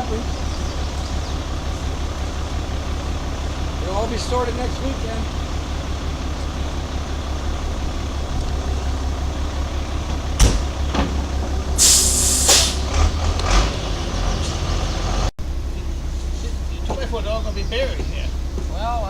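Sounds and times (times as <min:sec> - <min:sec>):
truck engine idling: 0:00.0 - 0:19.0
sharp knocks: 0:10.4 - 0:11.3
air hiss: 0:11.8 - 0:12.8.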